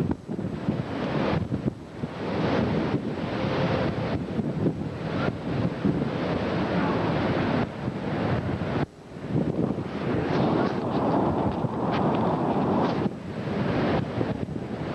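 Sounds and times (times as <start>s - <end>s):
storm wind buffeting microphone: 0.0s - 14.9s.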